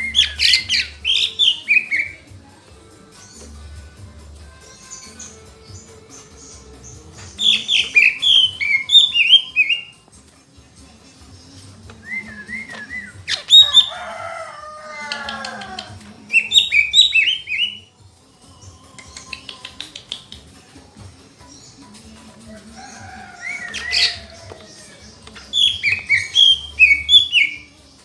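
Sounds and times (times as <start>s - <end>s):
bird whistled song: 0.0s - 2.3s, 4.8s - 10.0s, 11.9s - 14.0s, 15.2s - 20.3s, 22.8s - 27.8s.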